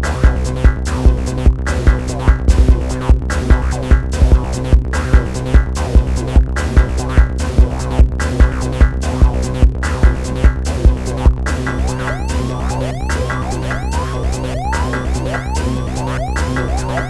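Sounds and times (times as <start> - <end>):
kick drum beat: 0.0 - 11.5
droning synth bass: 0.0 - 17.0
rising synth sweeps: 11.5 - 17.0.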